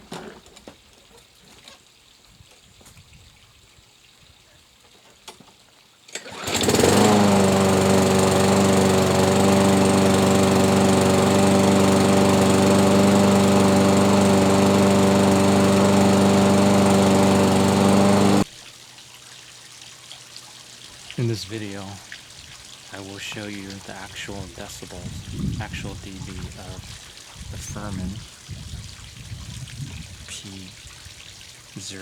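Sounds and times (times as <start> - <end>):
lawn mower engine running: 6.2 - 18.5.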